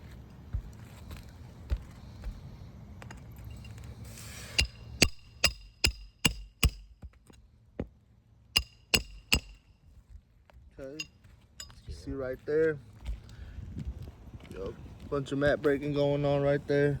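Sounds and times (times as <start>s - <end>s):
hammer striking metal tool: 4.6s - 7.0s, 8.6s - 9.7s.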